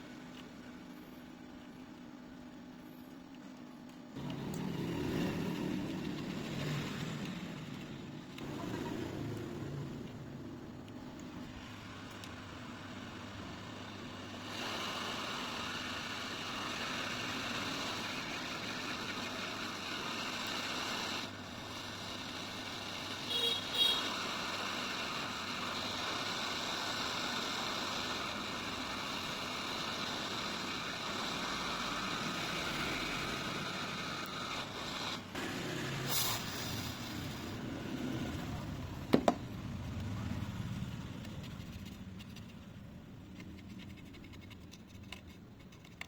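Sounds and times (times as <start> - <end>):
hot air hissing: 11.4 - 39.5.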